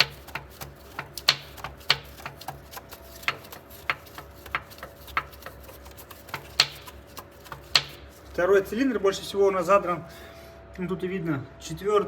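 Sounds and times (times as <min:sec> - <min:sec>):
sharp clicks and taps: 0:00.0 - 0:08.1
faint steady hum: 0:00.0 - 0:12.0.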